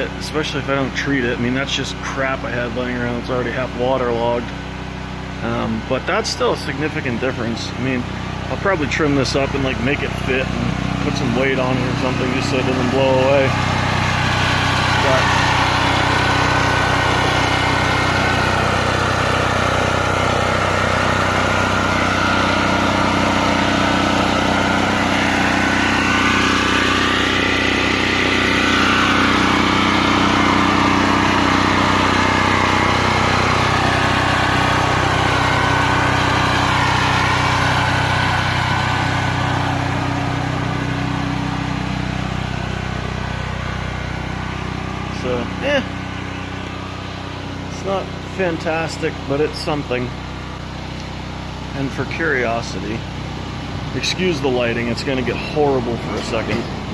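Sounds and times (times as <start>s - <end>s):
muffled generator engine running: 0.0s - 56.9s.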